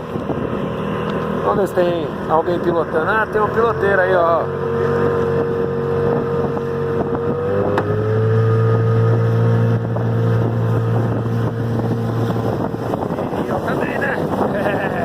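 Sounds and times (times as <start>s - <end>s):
outboard motor running: 0.0s - 15.0s.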